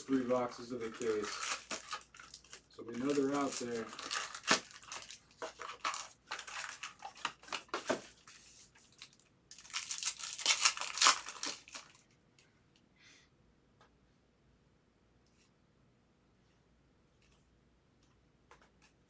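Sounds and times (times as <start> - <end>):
foil wrappers crinkling and tearing: 0.2 - 12.0.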